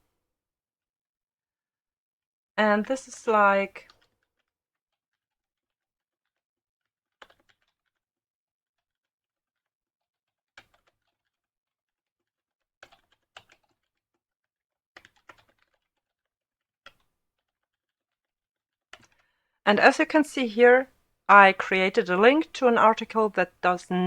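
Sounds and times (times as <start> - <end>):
faint keyboard typing: 10.6 - 11.2, 12.8 - 13.9.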